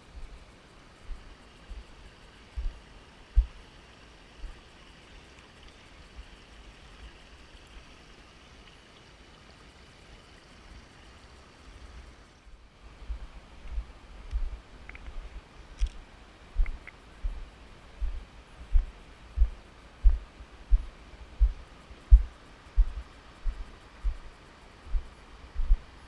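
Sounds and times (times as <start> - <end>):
short low thumps: 18.0 - 24.3.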